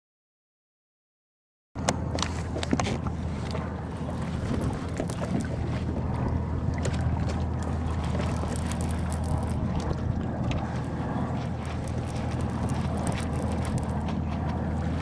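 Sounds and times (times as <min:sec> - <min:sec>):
water against a kayak: 0:01.8 - 0:15.0
wind on microphone: 0:01.8 - 0:15.0
small clicks and knocks: 0:11.6 - 0:14.6.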